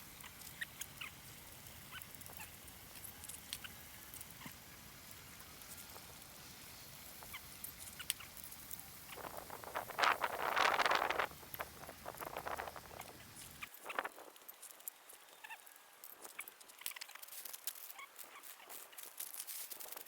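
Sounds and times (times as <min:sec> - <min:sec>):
food sizzling: 0:00.0 - 0:14.4.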